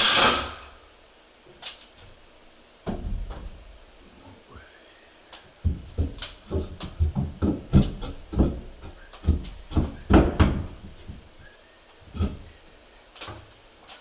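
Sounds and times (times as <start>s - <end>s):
knocks and thumps of tools: 2.8s - 4.4s, 5.6s - 13.6s.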